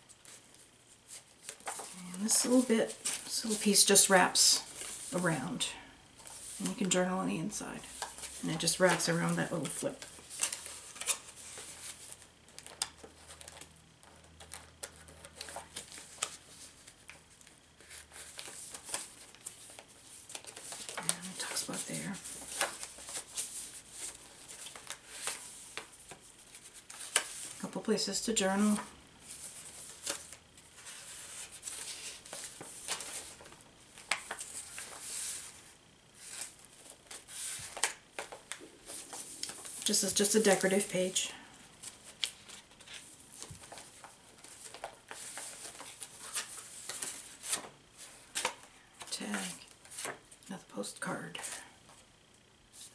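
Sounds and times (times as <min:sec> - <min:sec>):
paper pages rustling: 0:00.0 - 0:05.3, 0:07.8 - 0:27.8, 0:28.6 - 0:40.9, 0:41.8 - 0:50.4
faint low hum: 0:00.0 - 0:52.9.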